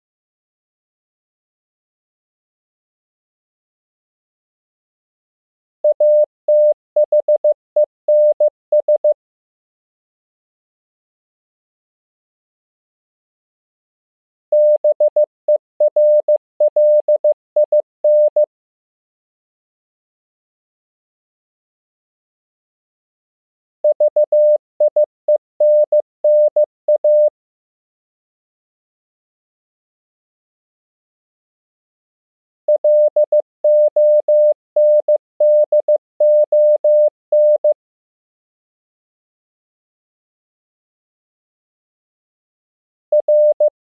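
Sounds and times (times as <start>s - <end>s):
morse code beeps: 5.9s - 9.2s, 14.6s - 18.5s, 23.8s - 27.3s, 32.7s - 37.8s, 43.1s - 43.7s.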